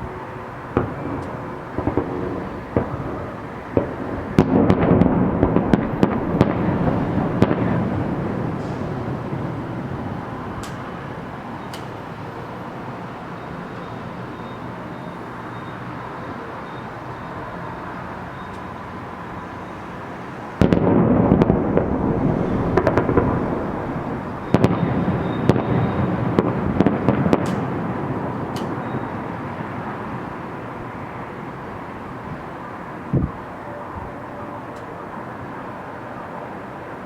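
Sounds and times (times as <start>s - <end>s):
fireworks booming and crackling: 0.0s - 15.4s, 19.6s - 34.2s
steady background hum: 20.8s - 27.1s.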